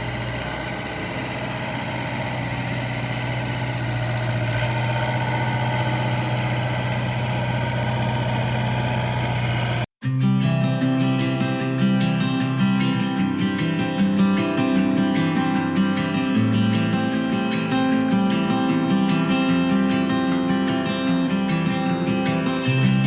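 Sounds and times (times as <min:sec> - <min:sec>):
excavator engine running: 0:00.0 - 0:09.9.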